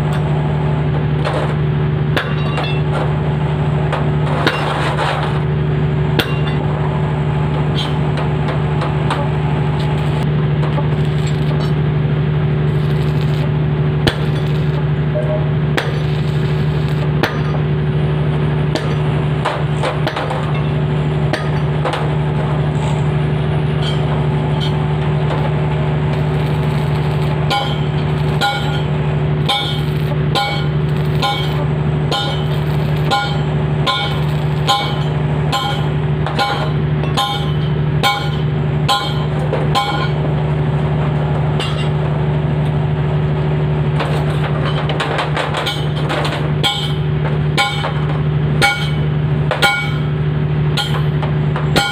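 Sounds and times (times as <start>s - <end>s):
engine drone: 0.0s - 51.9s
metal-on-metal clanks: 2.2s - 3.2s, 3.9s - 5.5s, 6.2s - 6.7s, 7.6s - 9.3s, 18.8s - 23.0s, 23.8s - 25.6s, 26.7s - 40.2s, 41.6s - 42.0s, 44.0s - 50.1s, 50.8s - 51.9s.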